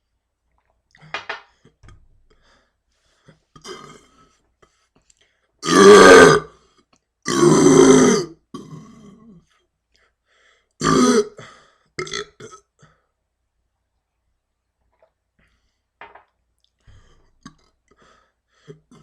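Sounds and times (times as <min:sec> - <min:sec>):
man burping: 0:03.6 - 0:04.2, 0:05.6 - 0:06.5, 0:07.3 - 0:09.3, 0:10.8 - 0:12.8.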